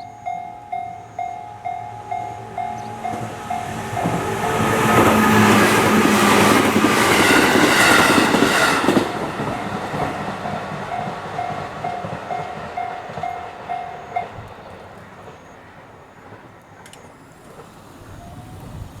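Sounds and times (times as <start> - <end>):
crossing warning bell ringing: 0.0 - 15.7
train wheels on rails: 0.0 - 19.0
faint clicks: 16.8 - 17.8.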